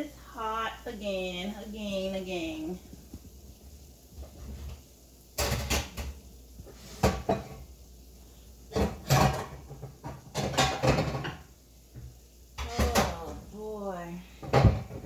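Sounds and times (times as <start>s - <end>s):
cookware knocking and clattering: 5.4s - 6.2s, 7.0s - 7.7s, 8.7s - 11.5s, 12.6s - 13.5s, 14.4s - 15.0s.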